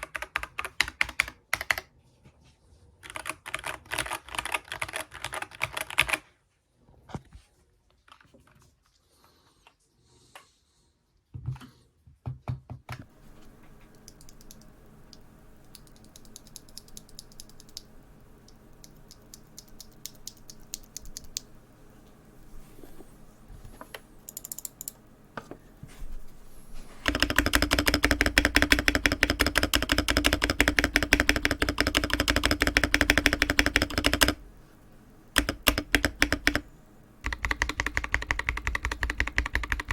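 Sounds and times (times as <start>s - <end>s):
typing on mechanical keyboard: 0.0s - 1.9s, 3.0s - 6.3s, 15.6s - 17.9s, 18.8s - 21.4s, 24.3s - 25.0s, 27.0s - 34.4s, 35.4s - 36.6s, 37.2s - 39.9s.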